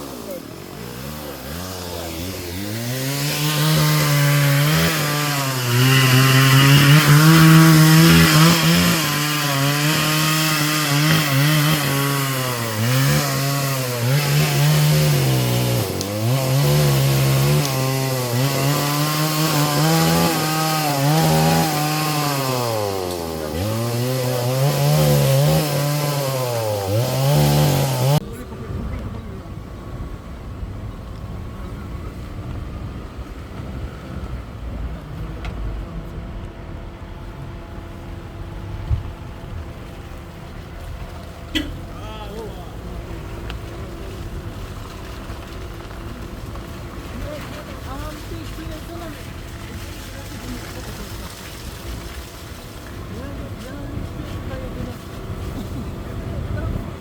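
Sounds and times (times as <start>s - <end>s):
chainsaw cutting wood: 0.0s - 28.2s, 40.7s - 41.9s.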